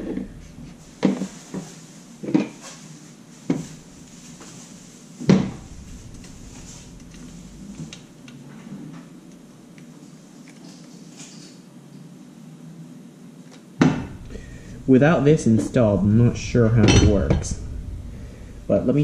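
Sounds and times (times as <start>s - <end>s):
rustling: 0.0s - 9.5s, 13.9s - 19.0s.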